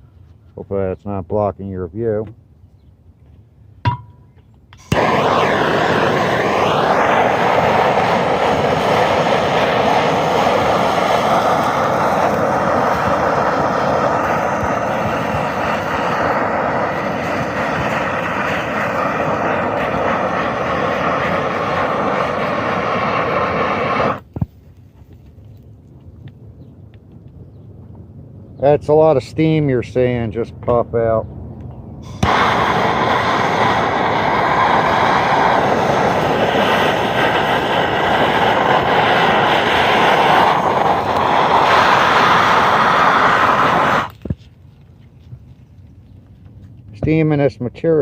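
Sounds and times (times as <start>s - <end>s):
torch click: 4.8s - 9.0s, 32.0s - 42.8s
gas torch hissing: 4.8s - 24.4s, 32.0s - 44.3s.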